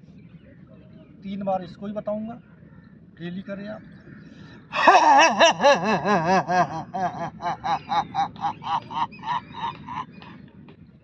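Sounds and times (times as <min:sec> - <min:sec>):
man roaring from the throat: 0:04.8 - 0:05.6.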